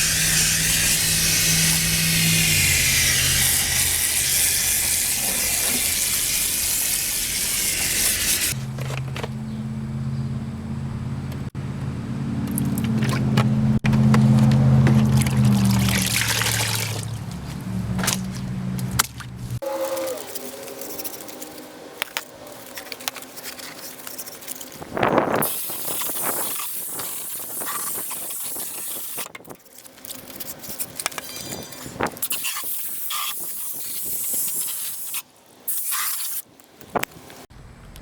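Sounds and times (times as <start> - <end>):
spray hissing: 0.0 - 8.6, 25.4 - 29.2, 32.2 - 36.4.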